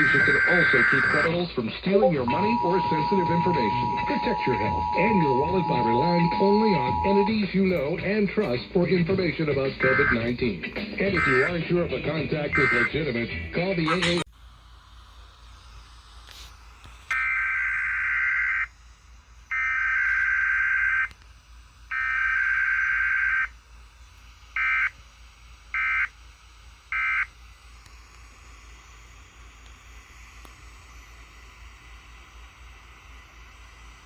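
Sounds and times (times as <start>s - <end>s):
faint radio hiss: 0.0s - 14.3s
warbling two-tone data bursts: 2.0s - 7.5s, 11.0s - 11.6s.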